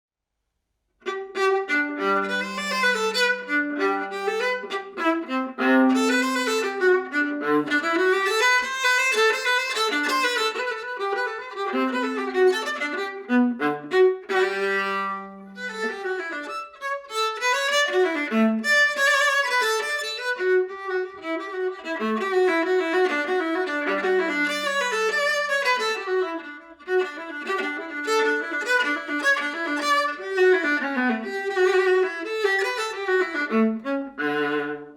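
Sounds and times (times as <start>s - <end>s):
bowed viola melody: 1.0s - 34.9s.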